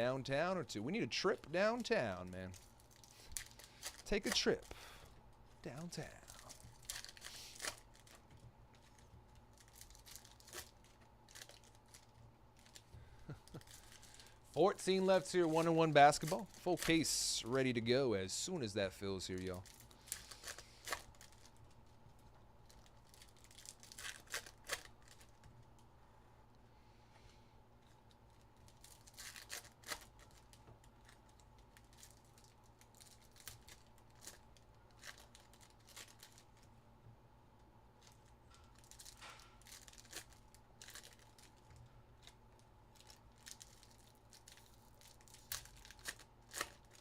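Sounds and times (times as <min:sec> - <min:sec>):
faint hum: 0:00.0 - 0:47.0
card wrappers tearing and crinkling: 0:01.7 - 0:04.7, 0:05.7 - 0:12.8, 0:13.4 - 0:17.5, 0:19.3 - 0:21.7, 0:22.6 - 0:25.5, 0:28.3 - 0:36.6, 0:38.0 - 0:47.0.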